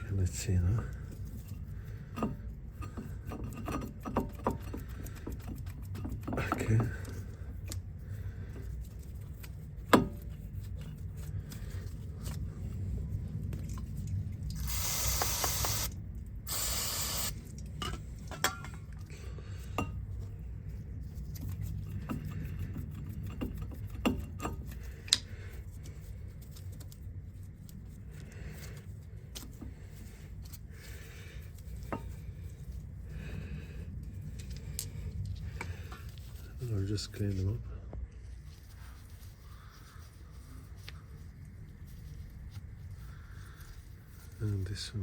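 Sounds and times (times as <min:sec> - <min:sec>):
aerosol spray hissing: 0:14.6 - 0:15.9, 0:16.5 - 0:17.4.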